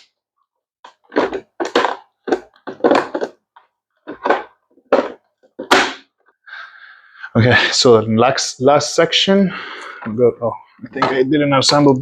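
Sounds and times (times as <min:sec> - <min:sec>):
plastic modules knocking and clattering: 0:00.8 - 0:06.0.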